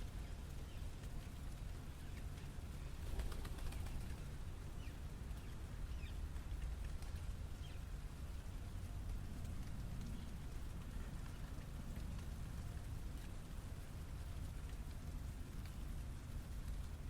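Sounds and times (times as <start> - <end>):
low traffic rumble: 0.0 - 17.0
bird wingbeats: 2.9 - 4.4.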